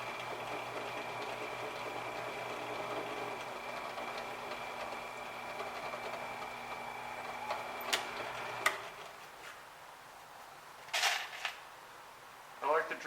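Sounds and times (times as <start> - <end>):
electric drill running: 0.0 - 9.1.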